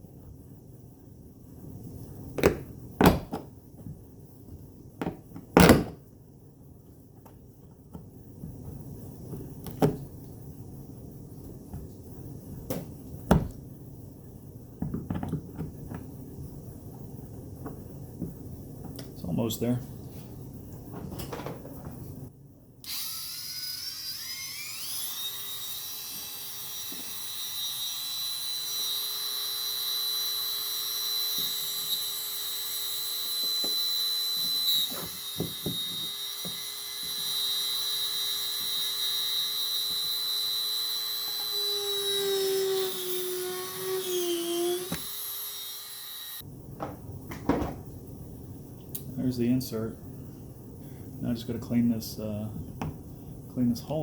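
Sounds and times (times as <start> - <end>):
rotary tool grinding whine: 22.8 - 46.4.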